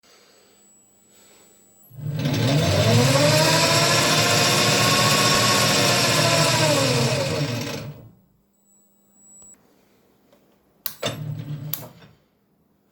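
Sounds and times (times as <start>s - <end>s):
lathe motor whine: 1.9s - 8.2s.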